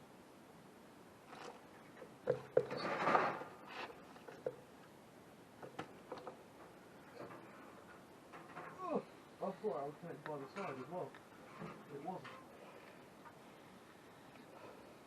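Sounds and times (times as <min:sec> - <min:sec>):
rustling and scraping: 0:01.2 - 0:04.7, 0:05.6 - 0:08.8, 0:10.3 - 0:13.4.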